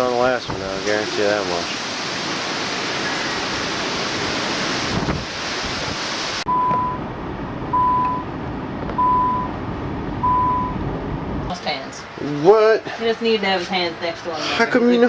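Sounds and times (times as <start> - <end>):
wind blowing on microphone: 0.3 - 0.9, 3.0 - 6.4
electronic beeps: 7.8 - 8.3, 9.0 - 9.6, 10.2 - 10.8.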